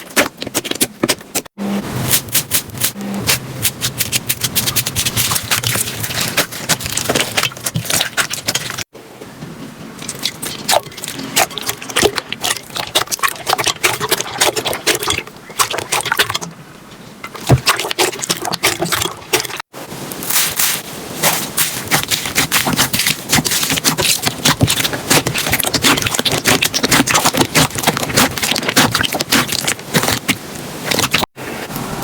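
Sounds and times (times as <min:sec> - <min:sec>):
slime squished by hand: 0:20.4 - 0:31.2.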